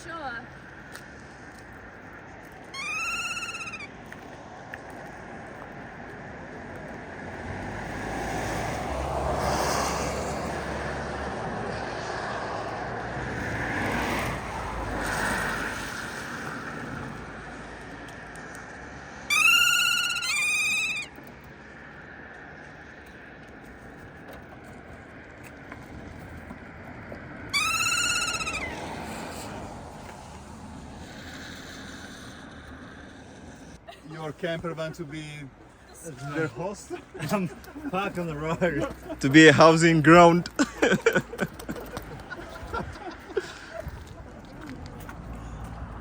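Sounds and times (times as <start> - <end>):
parrot screeching: 2.7 - 3.9, 19.3 - 21.1, 27.5 - 29.5.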